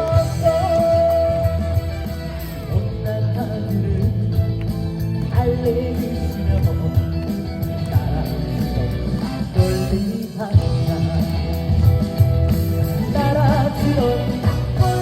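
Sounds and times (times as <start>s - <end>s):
band backing track with beat: 0.0s - 15.0s
person singing: 0.0s - 15.0s.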